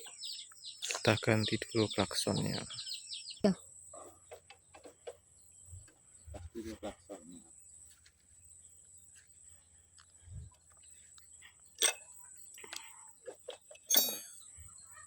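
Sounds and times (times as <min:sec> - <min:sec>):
tools clicking and knocking: 0:11.8 - 0:12.0, 0:13.5 - 0:14.4.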